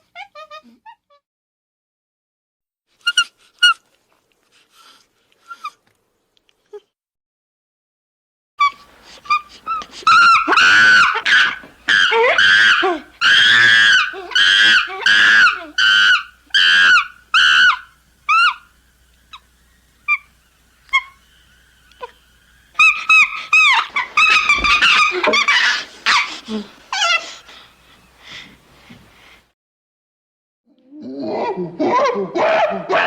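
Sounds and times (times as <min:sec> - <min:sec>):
ape screaming: 0:10.0 - 0:27.3.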